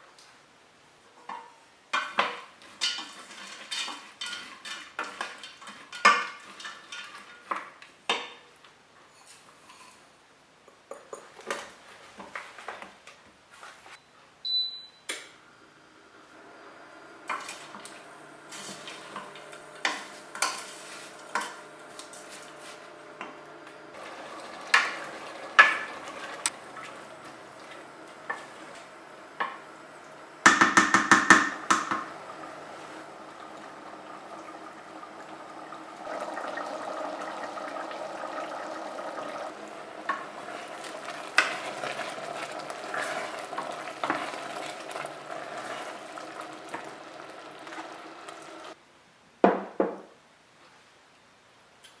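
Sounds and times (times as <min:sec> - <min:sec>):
utensils clinking against cookware: 0:02.0 - 0:08.4, 0:17.3 - 0:23.4.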